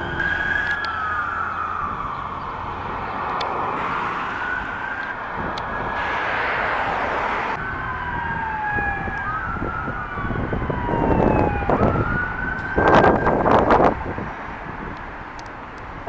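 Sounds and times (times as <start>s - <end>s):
police sirens wailing: 0.0s - 16.0s
loud rushing noise: 5.3s - 7.9s.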